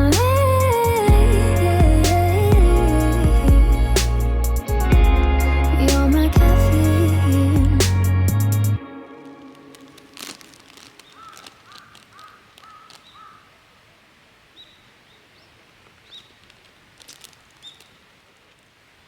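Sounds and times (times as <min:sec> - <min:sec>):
birds calling: 0:09.8 - 0:13.6.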